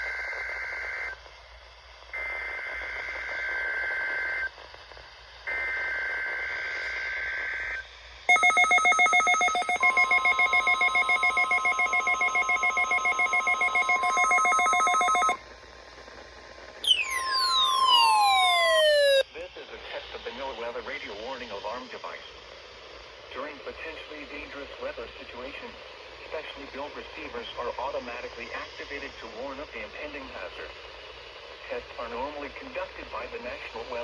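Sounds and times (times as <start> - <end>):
pulsing electronic alarm beep: 8.3 - 15.4, 16.9 - 19.2
steady warning tone: 8.3 - 15.4, 16.9 - 19.2
two-tone digital header bursts: 8.3 - 15.4.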